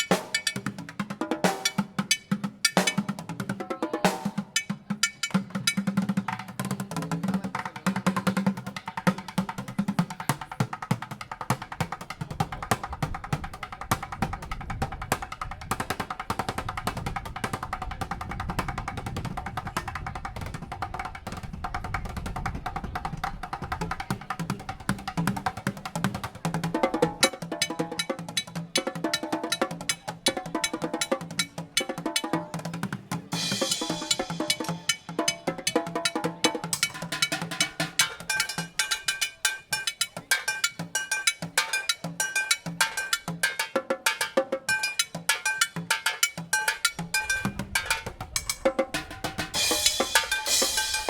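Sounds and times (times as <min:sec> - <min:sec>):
fast drum and percussion hits: 0:00.0 - 0:51.0.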